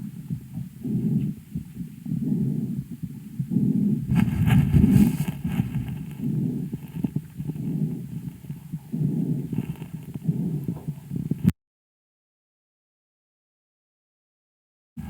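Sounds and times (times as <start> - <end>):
breath sounds through stethoscope: 0.0 - 11.5
scratchy breath sound: 0.0 - 11.5.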